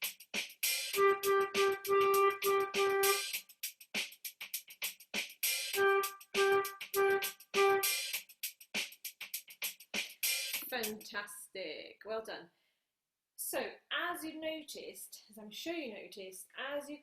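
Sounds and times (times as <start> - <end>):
drum-machine loop: 0.0 - 11.0
flute playing short notes: 1.0 - 3.3, 5.8 - 8.0.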